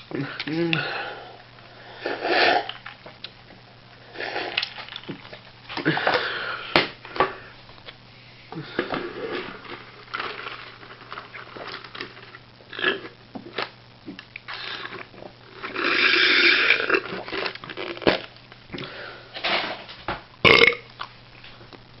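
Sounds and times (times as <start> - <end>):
man burping: 0.1 - 1.1, 20.4 - 20.9.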